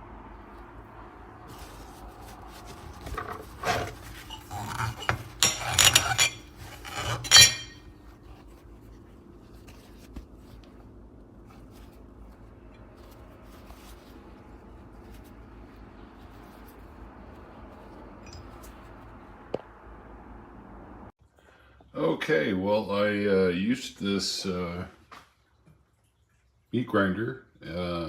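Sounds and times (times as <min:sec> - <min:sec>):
appliance parts clattering: 0:02.7 - 0:07.8.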